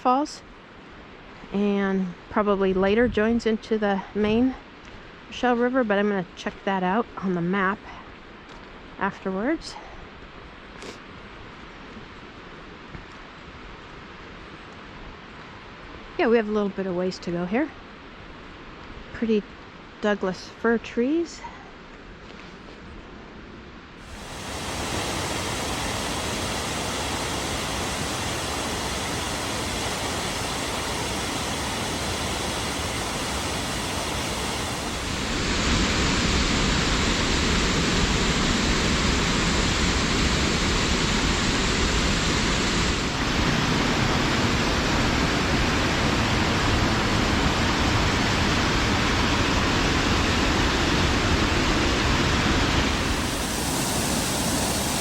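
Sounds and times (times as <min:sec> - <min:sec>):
waterfall rushing: 0:24.0 - 0:55.0.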